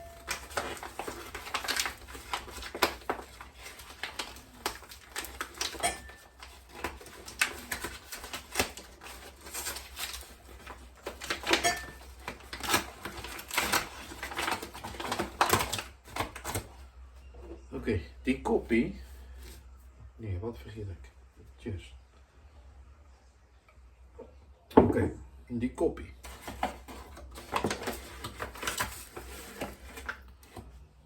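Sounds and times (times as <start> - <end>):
kitchen items clicking and knocking: 0.0 - 16.6.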